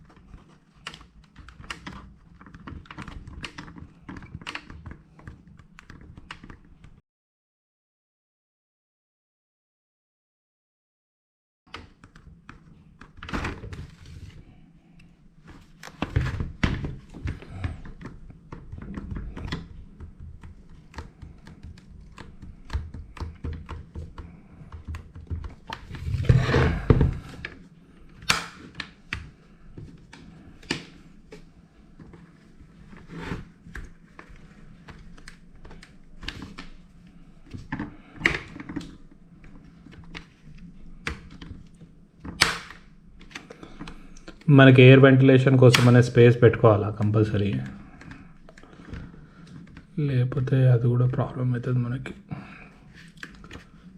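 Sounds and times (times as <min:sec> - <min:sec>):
plastic knocks and clicks: 0:15.8 - 0:27.6.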